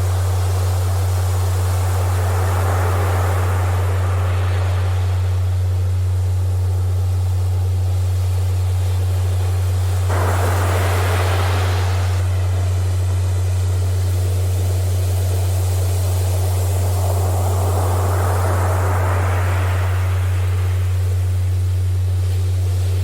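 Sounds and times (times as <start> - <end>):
deep pure tone: 0.0 - 23.0
ocean surf hissing: 0.0 - 23.0
wave washing in: 0.0 - 23.0.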